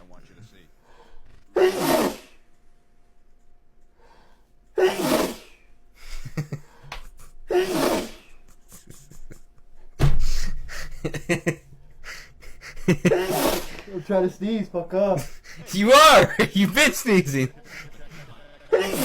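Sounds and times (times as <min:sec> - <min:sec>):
gasping breaths: 0:10.2 - 0:11.1, 0:12.0 - 0:12.9
man sneezing: 0:15.4 - 0:17.4.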